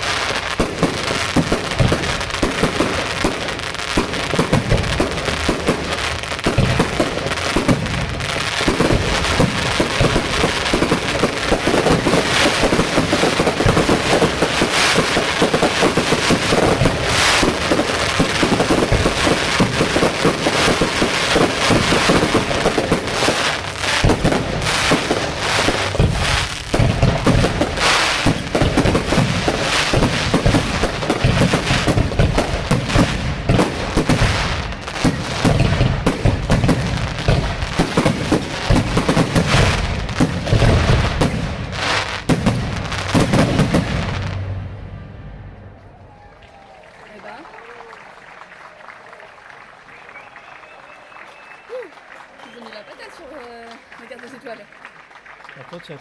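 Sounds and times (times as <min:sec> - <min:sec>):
low firework booms: 0:00.0 - 0:47.4
fireworks bangs and crackling: 0:00.0 - 0:56.0.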